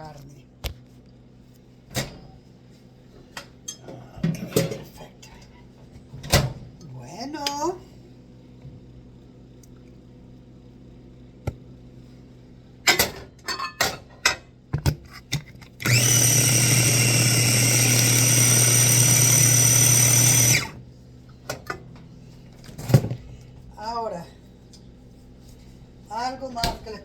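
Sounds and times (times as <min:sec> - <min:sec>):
blender motor grinding: 0:15.7 - 0:20.8.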